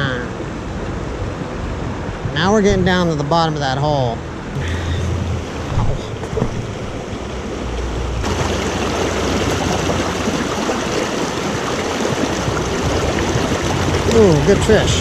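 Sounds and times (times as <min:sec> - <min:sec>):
creek rushing over rocks: 0:04.8 - 0:15.0.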